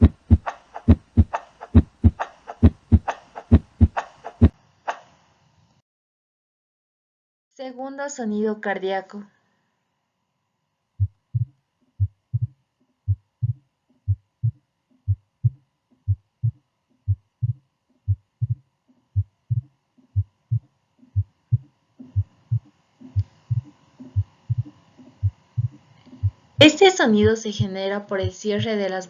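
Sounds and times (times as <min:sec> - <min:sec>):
heartbeat lub-dub thumps: 0:00.0 - 0:04.5, 0:11.0 - 0:28.8.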